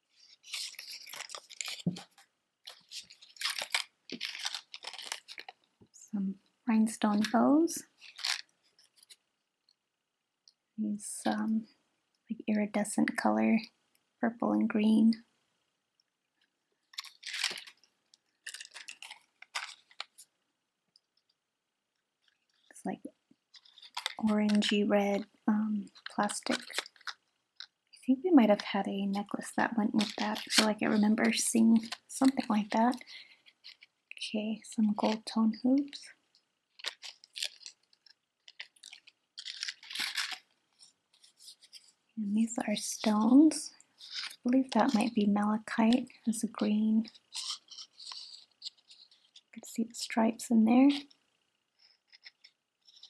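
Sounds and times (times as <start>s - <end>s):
earrings rustling and clicking: 0.0s - 5.7s, 6.8s - 9.2s, 16.4s - 20.3s, 22.2s - 49.8s, 51.8s - 53.0s.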